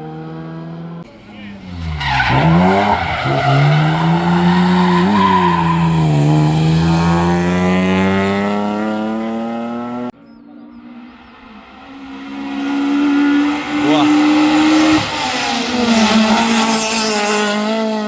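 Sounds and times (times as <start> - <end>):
race car engine revving: 0.0 - 10.1, 10.8 - 18.0
tyres squealing: 1.6 - 6.4.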